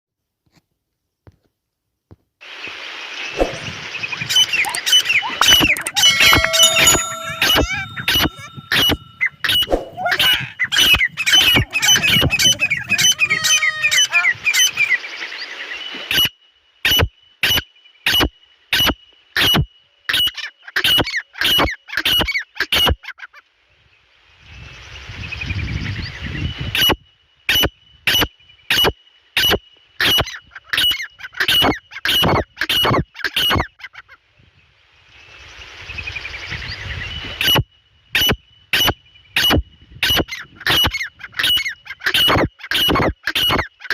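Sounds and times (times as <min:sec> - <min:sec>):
bird calling sharp notes: 0:04.4 - 0:14.9.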